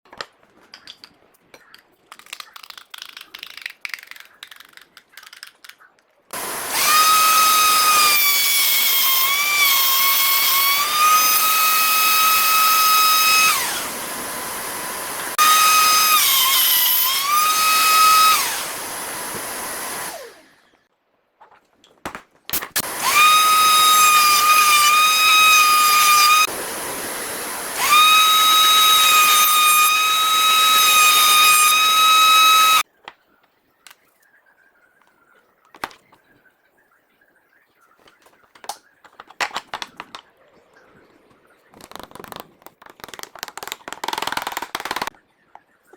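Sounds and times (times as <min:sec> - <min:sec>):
router whining: 0:06.4 - 0:20.7, 0:22.8 - 0:32.8.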